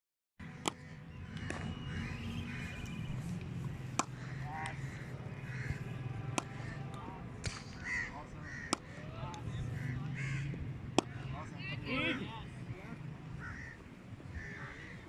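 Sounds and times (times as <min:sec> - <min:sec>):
crows cawing: 0:00.6 - 0:02.7, 0:04.1 - 0:05.8, 0:07.8 - 0:08.9, 0:09.8 - 0:10.6, 0:13.4 - 0:15.0
cricket bat striking ball: 0:03.8 - 0:04.8, 0:06.2 - 0:06.6, 0:07.4 - 0:07.9, 0:08.6 - 0:09.5, 0:10.8 - 0:11.3.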